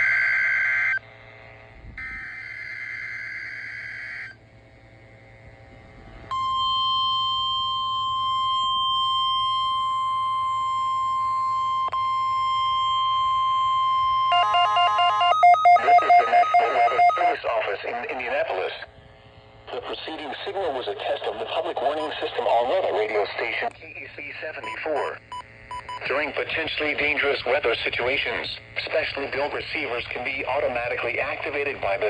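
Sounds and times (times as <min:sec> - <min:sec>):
steady warning alarm tone: 0:00.0 - 0:01.4, 0:02.0 - 0:04.4, 0:06.3 - 0:18.8, 0:19.7 - 0:32.0
warbling digital data bursts: 0:14.3 - 0:18.4.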